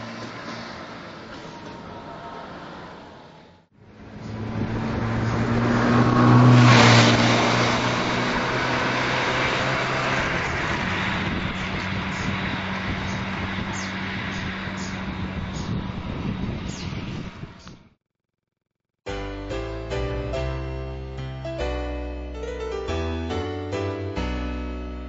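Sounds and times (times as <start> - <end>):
truck engine under throttle: 3.8 - 17.9.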